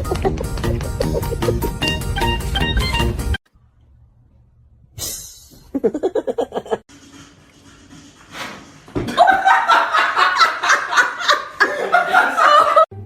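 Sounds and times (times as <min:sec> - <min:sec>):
people laughing: 0:09.1 - 0:12.9.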